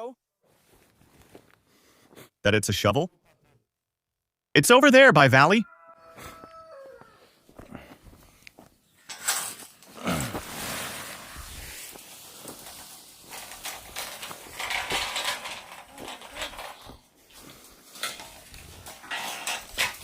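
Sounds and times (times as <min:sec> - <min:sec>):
shovel scraping dirt and gravel: 0:09.0 - 0:20.0.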